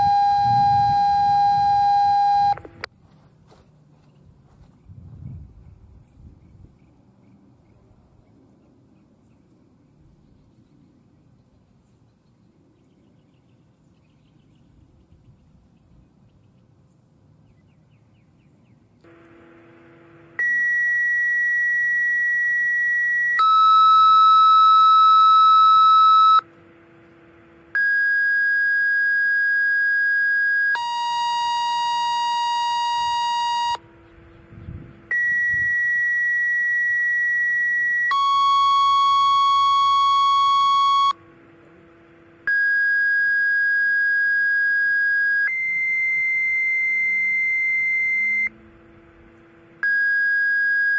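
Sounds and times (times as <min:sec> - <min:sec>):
siren activation beeping tones: 0:00.0 - 0:02.7, 0:20.4 - 0:26.5, 0:27.8 - 0:33.9, 0:35.1 - 0:41.2, 0:42.5 - 0:48.5
short low buzzy tone: 0:00.0 - 0:02.9, 0:19.1 - 0:49.4.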